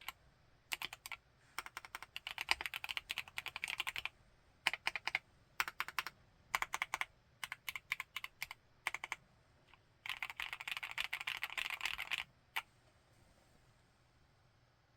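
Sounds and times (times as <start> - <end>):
mechanical keyboard typing: 0.0 - 9.2, 10.0 - 12.7.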